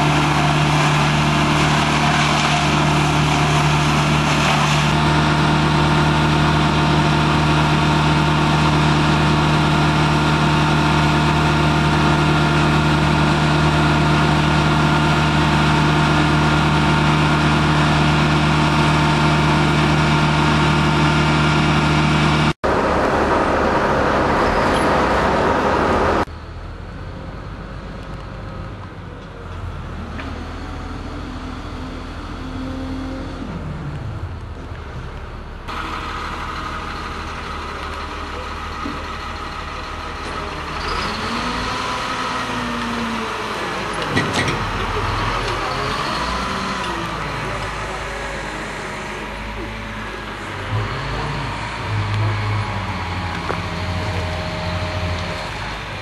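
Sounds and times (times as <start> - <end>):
quieter engine: 0.0 - 56.0
engine running steadily: 33.4 - 56.0.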